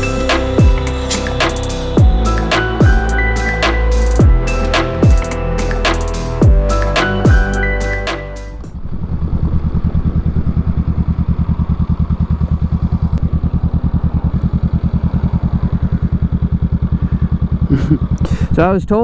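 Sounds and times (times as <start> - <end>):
motorcycle engine idling: 11.5 - 18.2.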